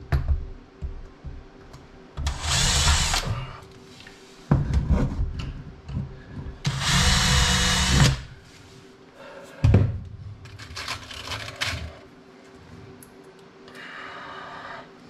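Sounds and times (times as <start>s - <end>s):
power drill driving a screw: 2.3s - 3.3s, 6.7s - 8.3s.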